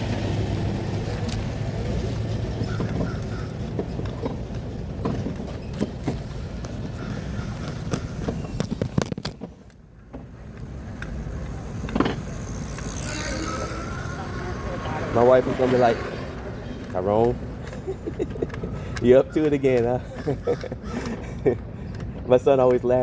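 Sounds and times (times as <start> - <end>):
low rumble of road traffic: 0.0 - 23.0
clanking tire-change equipment: 8.2 - 19.0.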